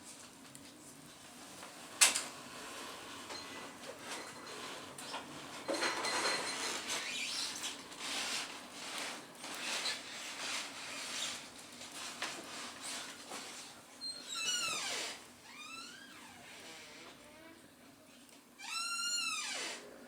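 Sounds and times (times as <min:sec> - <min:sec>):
wood fire crackling: 0:00.0 - 0:05.7, 0:06.4 - 0:13.8.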